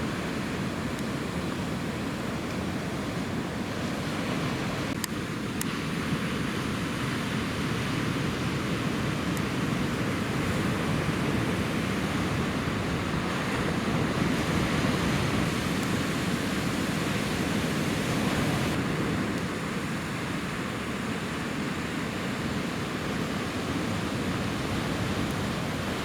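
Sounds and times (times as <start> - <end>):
ocean waves breaking: 0.0 - 26.0
wind on microphone: 7.8 - 19.8.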